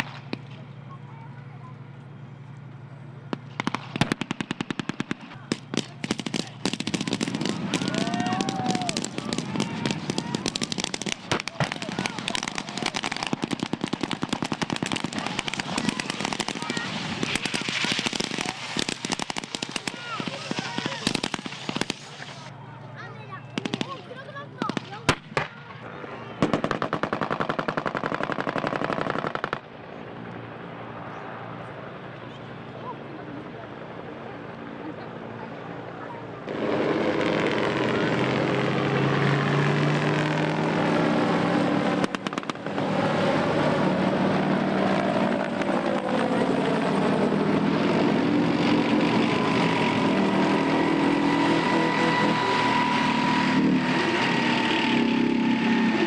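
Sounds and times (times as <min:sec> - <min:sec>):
low background noise: 0:00.0 - 0:40.0
low engine hum: 0:00.0 - 0:56.0
automatic gunfire: 0:03.6 - 0:22.3.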